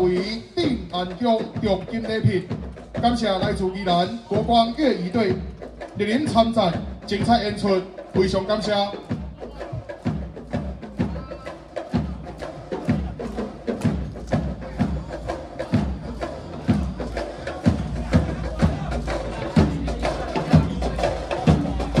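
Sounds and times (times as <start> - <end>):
drums beating steady rhythm: 0.0 - 22.0
marching band playing: 0.0 - 22.0.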